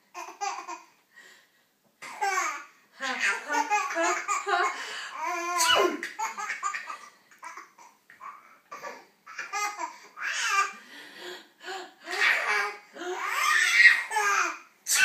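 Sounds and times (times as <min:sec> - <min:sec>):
baby laughing hysterically: 0:03.2 - 0:08.4, 0:12.1 - 0:15.0
woman fake sneezing: 0:05.5 - 0:06.2.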